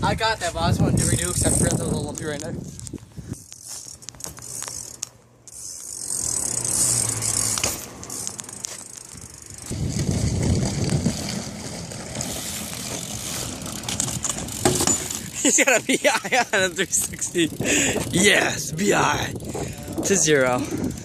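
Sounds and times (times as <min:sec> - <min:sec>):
bike parts rattling: 0:00.9 - 0:21.0
bike tyres hissing on pavement: 0:05.5 - 0:15.8
heavy rumbling: 0:09.6 - 0:15.6.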